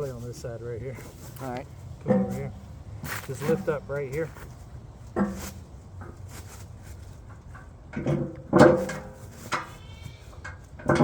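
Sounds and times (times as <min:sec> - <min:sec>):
heavy metal blade clunking: 0:02.0 - 0:02.6.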